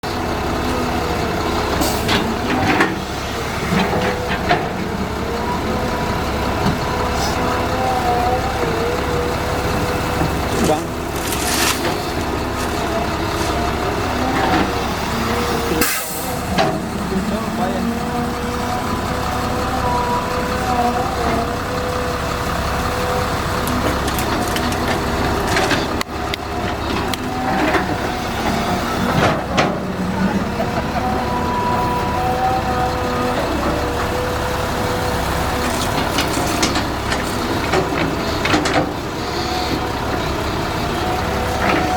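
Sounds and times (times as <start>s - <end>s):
diesel machinery rumbling: 0.0s - 41.9s
hydraulic whine: 0.0s - 41.9s.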